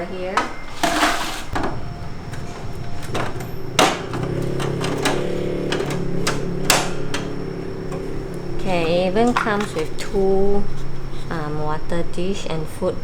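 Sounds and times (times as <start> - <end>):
bird cage parts knocking and clicking: 1.6 - 8.4.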